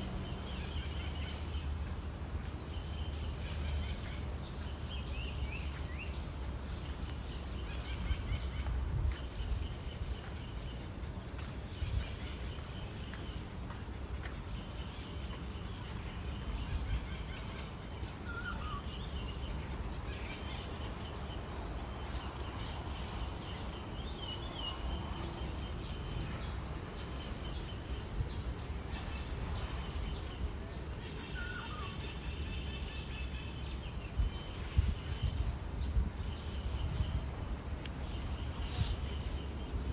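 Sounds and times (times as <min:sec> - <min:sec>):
cicada chorus: 0:00.0 - 0:39.9
faint bird chirps: 0:16.5 - 0:20.8, 0:31.1 - 0:34.5.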